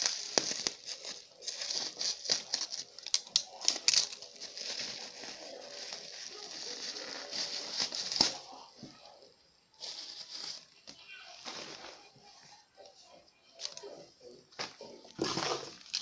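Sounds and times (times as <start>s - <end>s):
packaging crinkling: 0.0s - 8.6s.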